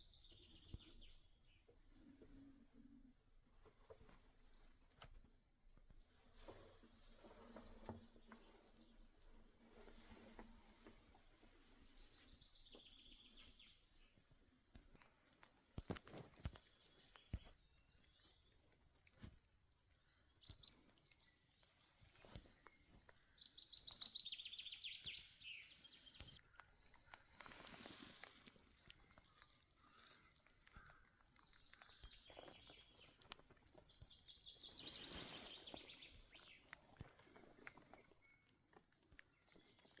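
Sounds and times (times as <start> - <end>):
bird chirps: 20.0 - 36.8.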